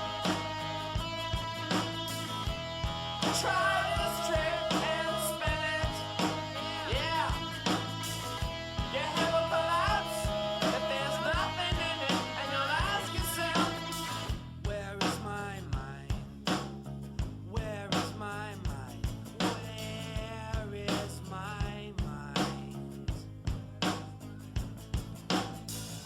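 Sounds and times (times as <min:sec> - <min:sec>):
rock song with guitar: 0:00.0 - 0:26.0
steady drum beat: 0:00.0 - 0:26.0
person singing: 0:03.3 - 0:07.7, 0:08.9 - 0:14.2.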